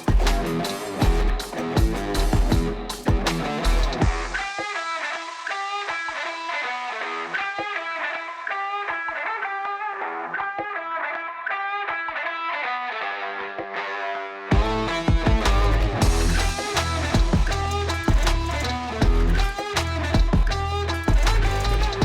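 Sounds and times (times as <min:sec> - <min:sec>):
heavy bass and beat: 0:00.0 - 0:04.5, 0:14.5 - 0:22.0
electric guitar melody: 0:00.0 - 0:22.0.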